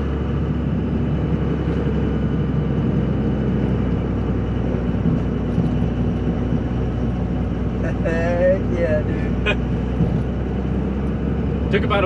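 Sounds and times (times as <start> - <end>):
diesel truck engine droning: 0.0 - 12.0
road noise: 0.0 - 12.0.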